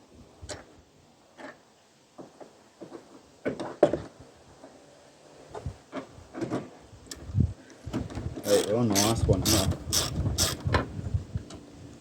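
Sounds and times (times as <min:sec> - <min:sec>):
tools clicking on metal: 0:08.5 - 0:10.6.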